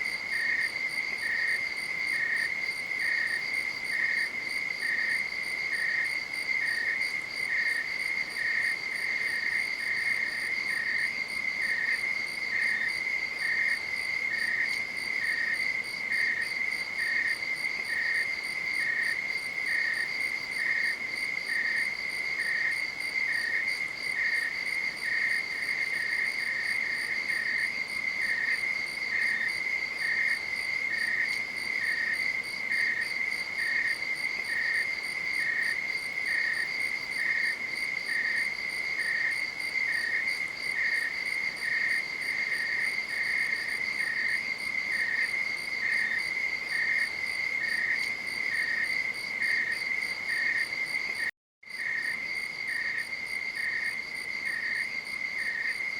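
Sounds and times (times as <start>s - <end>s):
insect chirping evenly: 0.0s - 55.9s.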